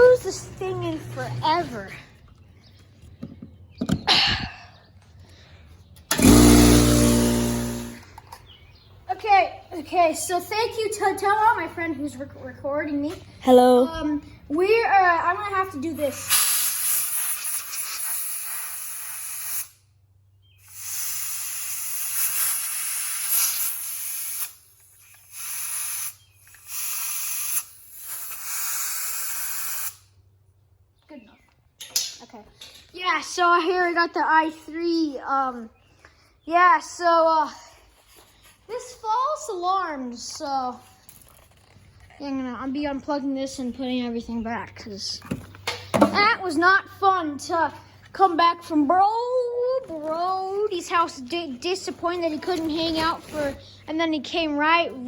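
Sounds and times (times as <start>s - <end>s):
compressed air blast: 6.1s - 8.0s, 16.2s - 19.8s, 20.6s - 30.1s.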